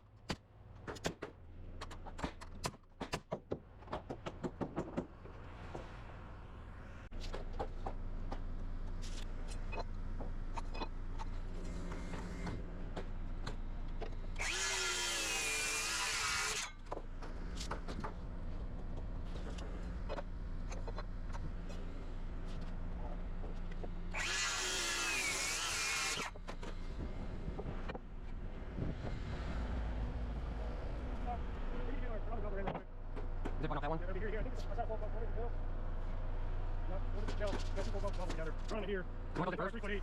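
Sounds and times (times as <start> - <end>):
power tool cutting wood: 14.4 - 16.8, 24.1 - 26.4.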